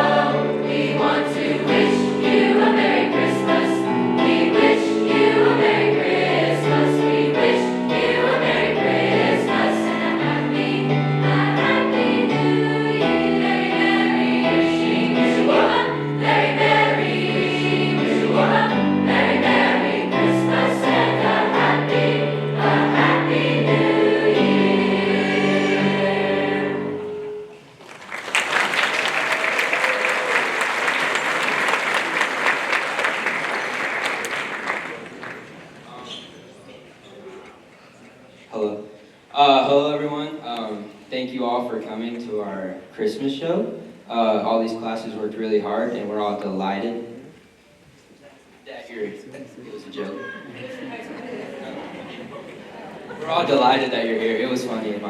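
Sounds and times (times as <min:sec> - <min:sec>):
choir singing: 0:00.0 - 0:27.4
audience applause: 0:27.8 - 0:35.9.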